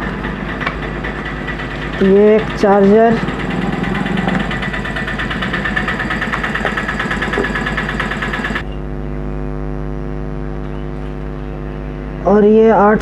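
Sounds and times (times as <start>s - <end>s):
small motor running: 0.0s - 8.6s.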